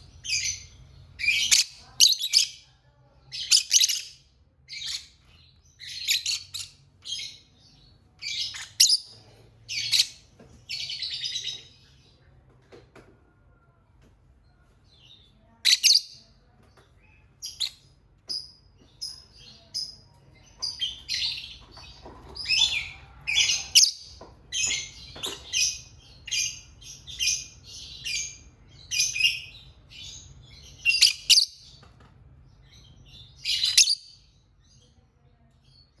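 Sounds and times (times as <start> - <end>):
lovebird chirping: 3.3 - 11.7, 22.4 - 31.8, 32.6 - 34.3.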